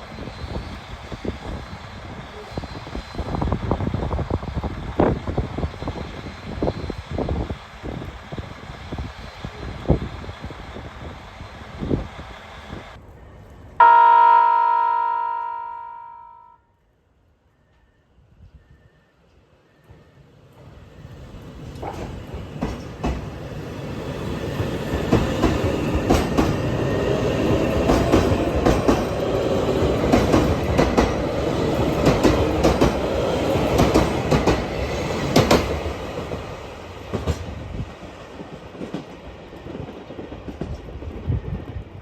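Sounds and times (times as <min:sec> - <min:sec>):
train wheels clicking on rails: 0:20.6 - 0:42.0.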